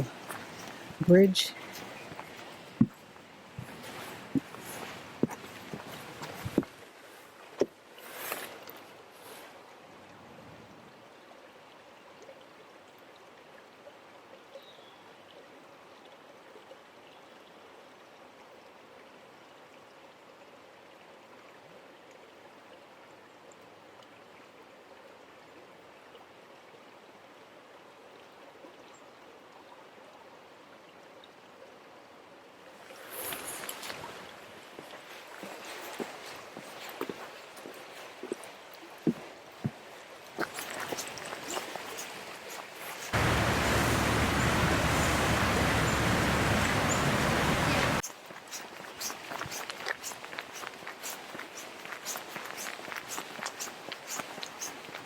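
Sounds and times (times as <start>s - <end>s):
stream water rushing: 0.0s - 10.1s, 32.7s - 55.0s.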